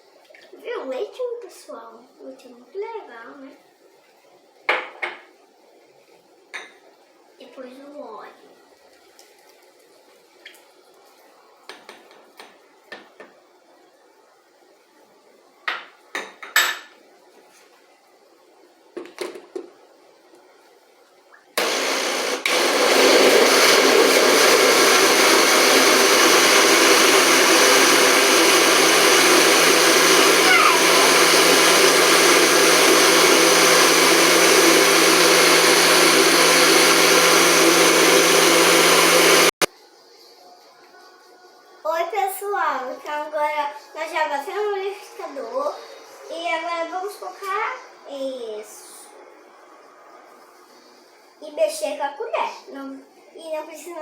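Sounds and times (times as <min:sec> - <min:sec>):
blender running: 0:21.6 - 0:39.7.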